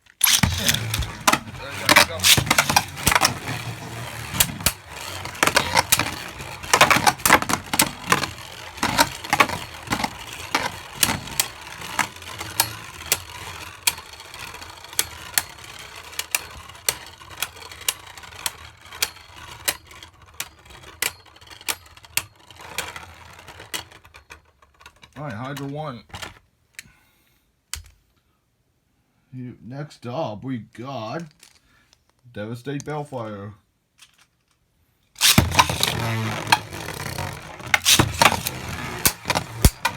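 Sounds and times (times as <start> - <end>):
spinning tops whirring scrape: 0.0 - 25.7, 35.2 - 39.9
plastic tops clacking: 0.0 - 26.4, 31.2 - 31.6, 35.2 - 39.9.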